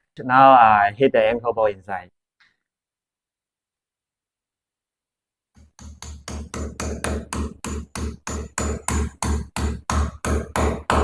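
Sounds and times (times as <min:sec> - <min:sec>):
hammer striking metal bolt: 0:05.6 - 0:11.0.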